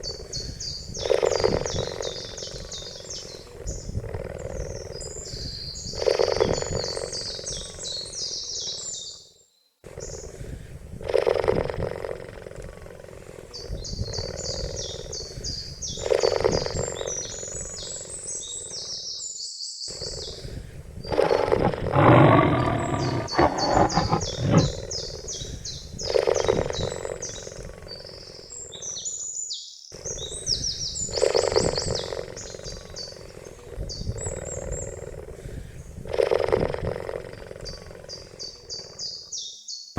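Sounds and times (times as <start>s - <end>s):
cheetah growling calls: 21.1s - 24.8s.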